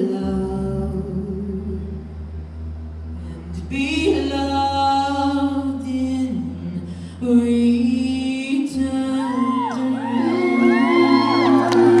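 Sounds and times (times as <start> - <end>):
men singing a cappella: 8.8 - 12.0
audience whooping and cheering: 9.2 - 12.0.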